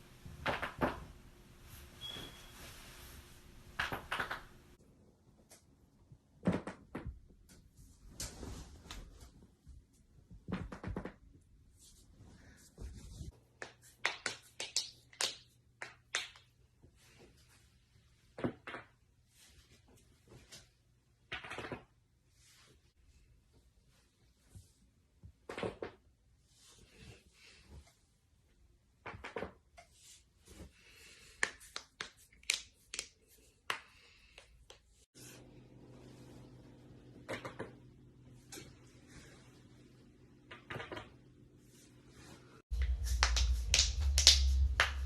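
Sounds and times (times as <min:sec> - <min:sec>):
soft rustling: 0:01.6 - 0:03.6, 0:11.6 - 0:13.4
steady low hum: 0:41.1 - 0:45.0.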